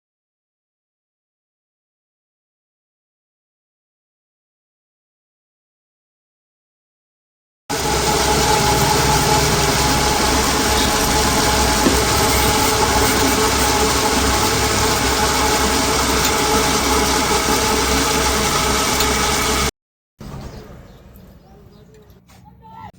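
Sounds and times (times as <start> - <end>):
machinery humming and whirring: 7.7 - 19.7.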